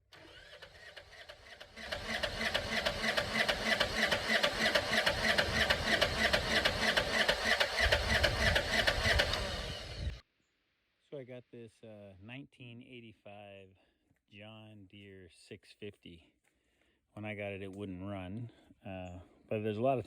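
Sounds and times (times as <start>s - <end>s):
tractor diesel engine running: 0.0s - 10.2s.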